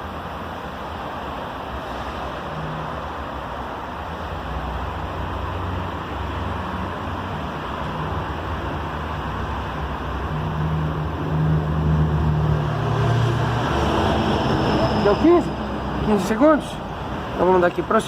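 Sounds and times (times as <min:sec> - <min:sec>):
low hum: 0:09.9 - 0:17.4.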